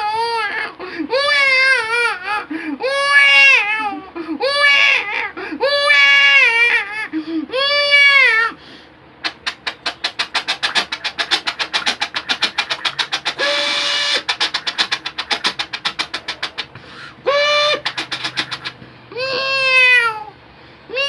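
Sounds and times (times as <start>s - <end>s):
man imitating train chugging: 9.2s - 19.8s
man imitating train whistle: 13.2s - 14.6s, 17.3s - 17.9s.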